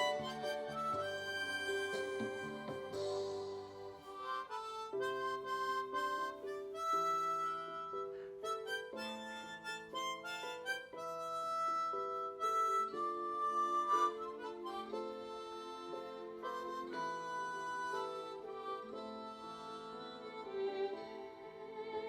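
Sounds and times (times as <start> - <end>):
harmonica playing chords: 0.0 - 21.3.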